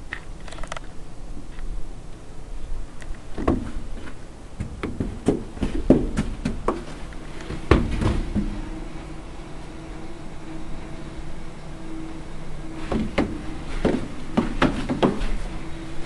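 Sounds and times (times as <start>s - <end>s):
faint steady hum: 0.0s - 16.0s
sharp knocks and clicks: 12.8s - 15.4s.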